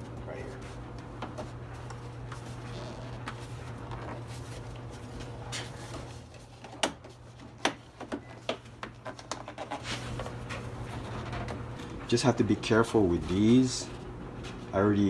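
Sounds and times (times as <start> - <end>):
steady low hum: 9.7 - 15.0.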